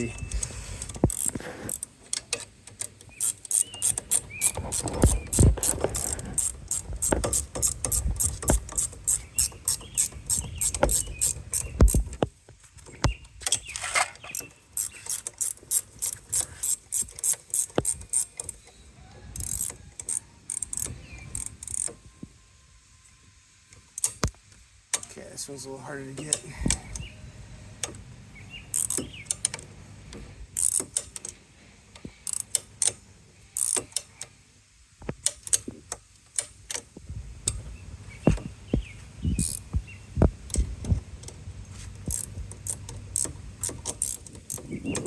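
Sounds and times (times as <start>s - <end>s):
ratcheting wrench clicking: 0.8s - 12.3s, 13.5s - 18.6s, 19.4s - 22.0s, 28.7s - 29.6s, 30.6s - 31.4s, 32.2s - 33.0s, 33.6s - 34.1s, 39.4s - 39.7s, 42.0s - 45.0s.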